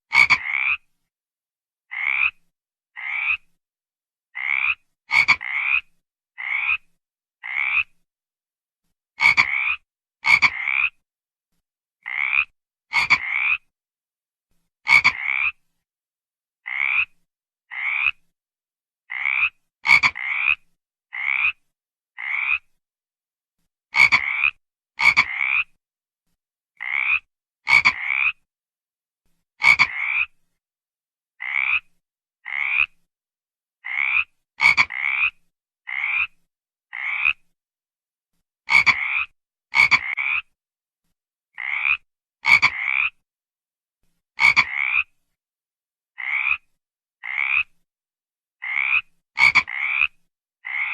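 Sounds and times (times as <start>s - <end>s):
frog croaking: 0.1s - 0.9s, 1.9s - 2.4s, 3.0s - 3.5s, 4.4s - 8.0s, 9.2s - 11.0s, 12.0s - 13.7s, 14.9s - 15.6s, 16.6s - 18.2s, 19.1s - 21.6s, 22.2s - 22.7s, 24.0s - 25.8s, 26.8s - 28.5s, 29.6s - 30.3s, 31.4s - 33.0s, 33.8s - 37.4s, 38.7s - 40.6s, 41.6s - 43.2s, 44.4s - 45.1s, 46.2s - 47.7s, 48.6s - 50.9s.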